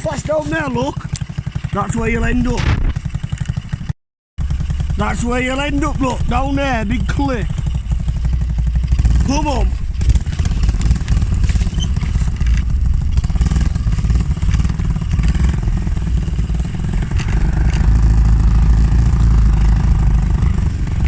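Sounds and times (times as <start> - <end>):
small motorbike engine running: 0.0 - 21.0.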